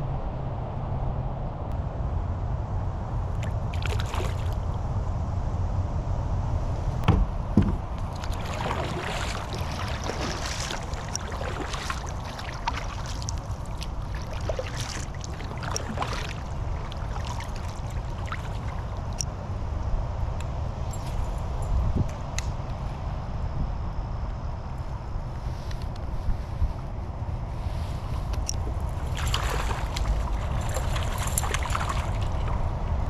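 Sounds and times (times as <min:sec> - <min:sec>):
steady low rumble: 0:00.0 - 0:33.0
paddle splashing water: 0:03.7 - 0:04.6, 0:07.1 - 0:19.2, 0:28.1 - 0:33.0
sharp knocks: 0:07.1 - 0:07.9.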